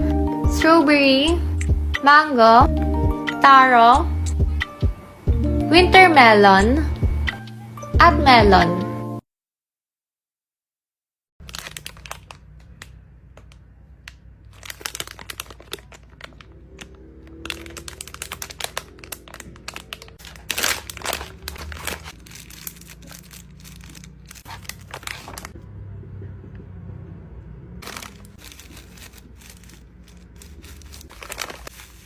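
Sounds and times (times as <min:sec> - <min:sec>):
crunchy slime crackling: 0:11.4 - 0:25.6, 0:27.8 - 0:32.0.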